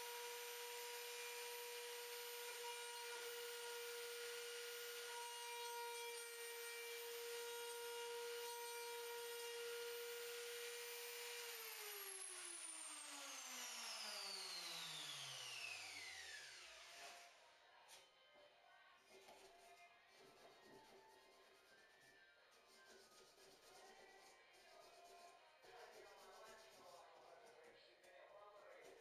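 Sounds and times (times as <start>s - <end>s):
woodworking machine motor whirring: 9.4s - 17.2s.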